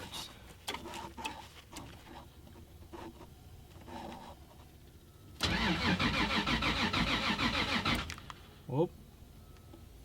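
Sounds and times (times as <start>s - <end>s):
car engine cranking on starter: 5.4s - 8.4s.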